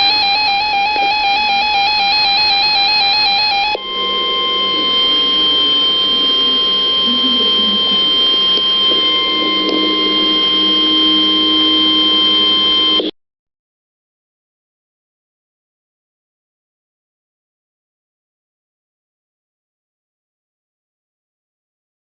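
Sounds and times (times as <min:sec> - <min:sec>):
high steady alert tone: 0:00.0 - 0:13.0.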